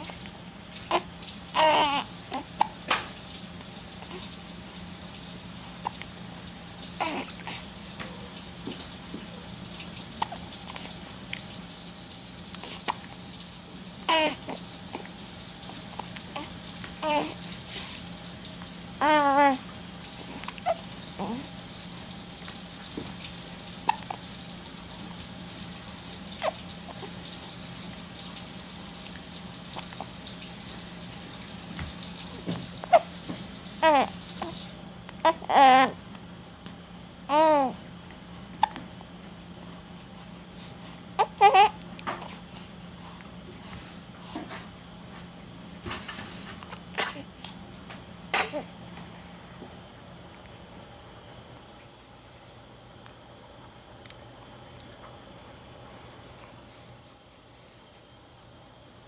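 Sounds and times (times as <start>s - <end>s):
running water hiss: 0.0s - 35.0s
child hiccuping: 38.6s - 38.8s, 46.9s - 47.3s, 48.3s - 48.7s
person hiccuping: 48.3s - 48.7s.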